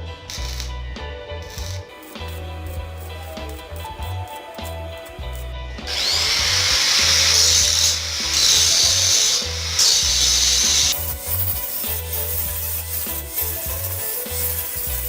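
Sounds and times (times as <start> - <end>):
background music with steady beat: 0.0 - 15.0
table saw cutting wood: 5.9 - 15.0.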